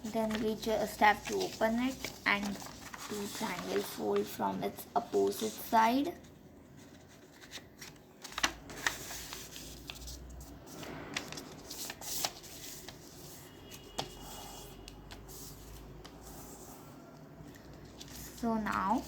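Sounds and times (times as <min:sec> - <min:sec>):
paper being folded and tapped: 0:00.0 - 0:04.4, 0:06.8 - 0:13.1, 0:14.8 - 0:16.5
paper rustling: 0:00.0 - 0:19.0.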